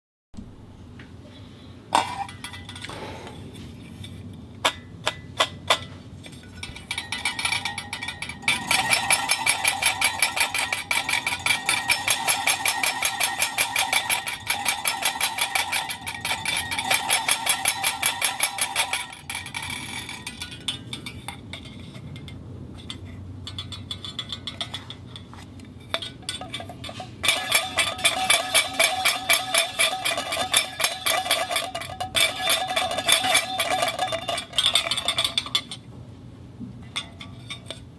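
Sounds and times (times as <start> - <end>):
clockwork spring ratchet clicking: 6.7 - 21.4.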